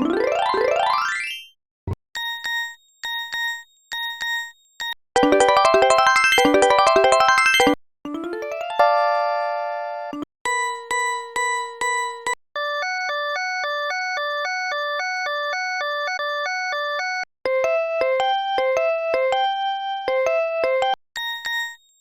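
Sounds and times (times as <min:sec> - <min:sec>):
phone ringtone beeps: 0:05.2 - 0:07.8.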